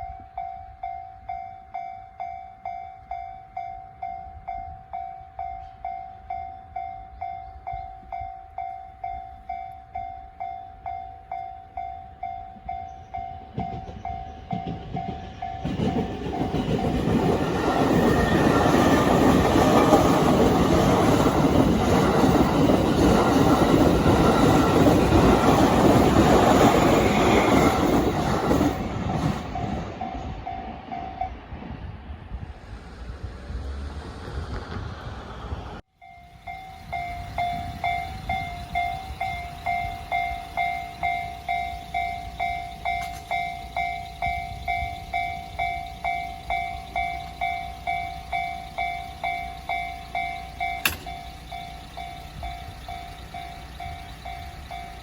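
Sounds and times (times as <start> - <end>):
train wheels clattering on rails: 12.2 - 31.8, 36.7 - 55.0
level crossing bell: 36.0 - 55.0.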